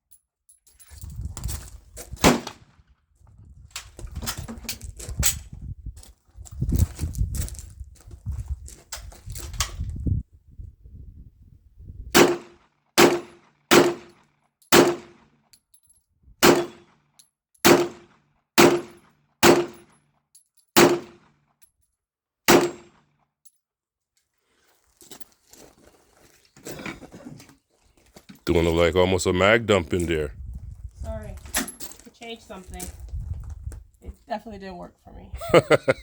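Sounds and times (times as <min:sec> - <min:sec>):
handgun shots: 0:12.2 - 0:15.2, 0:16.4 - 0:16.9, 0:17.6 - 0:19.9, 0:20.8 - 0:21.2, 0:22.5 - 0:23.0.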